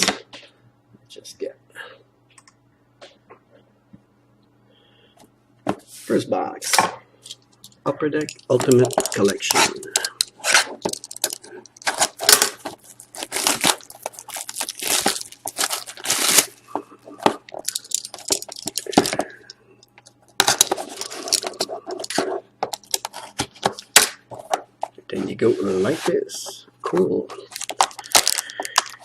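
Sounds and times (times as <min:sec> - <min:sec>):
packaging tearing and crinkling: 0:08.4 - 0:16.6, 0:27.4 - 0:29.0.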